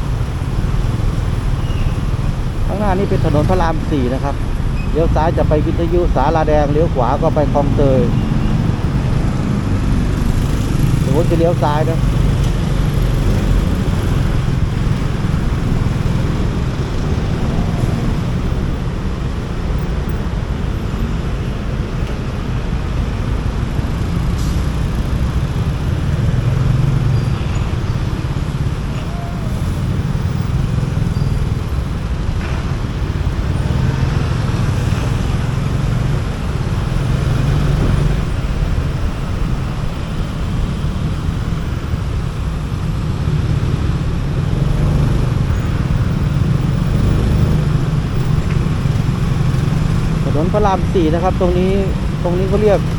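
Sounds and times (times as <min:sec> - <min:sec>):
road noise: 0:00.0 - 0:52.9
motorcycle engine: 0:07.0 - 0:19.2, 0:29.6 - 0:52.9.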